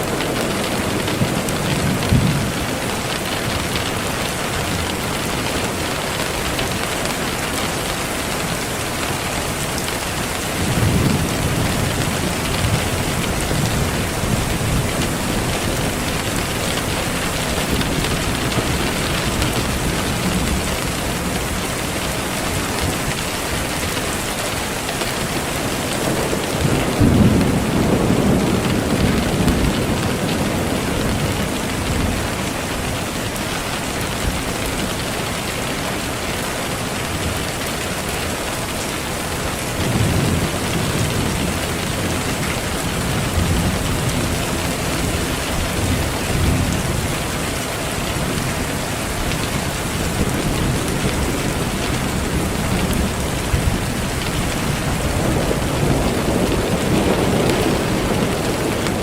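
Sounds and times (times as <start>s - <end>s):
steady rain: 0.0s - 59.0s
rolls of thunder: 54.8s - 59.0s.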